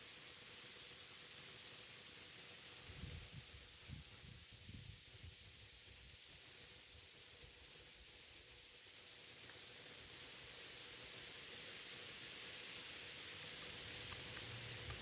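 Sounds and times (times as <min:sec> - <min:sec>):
faint steady hiss: 0:00.0 - 0:15.0.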